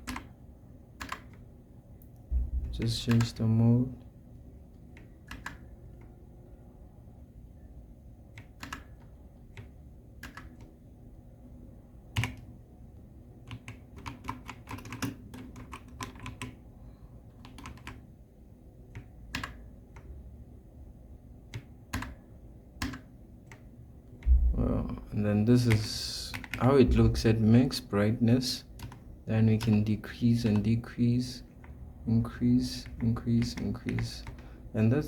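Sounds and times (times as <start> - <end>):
mechanical keyboard keystrokes: 0.0 - 0.4, 1.0 - 1.4, 2.8 - 3.4, 4.9 - 5.7, 8.3 - 10.7, 12.1 - 12.5, 13.4 - 16.6, 17.4 - 18.1, 18.9 - 20.1, 21.5 - 22.2, 22.8 - 23.7, 25.7 - 27.2, 28.8 - 29.0, 29.6 - 29.9, 32.8 - 34.4.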